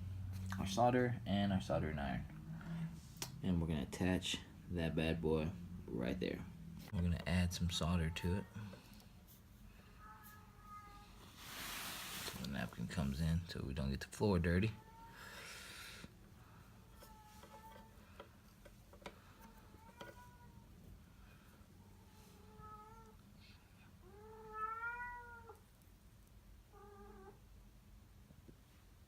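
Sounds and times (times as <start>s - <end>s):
cat meowing: 10.0s - 11.2s, 21.9s - 23.2s, 24.0s - 25.6s.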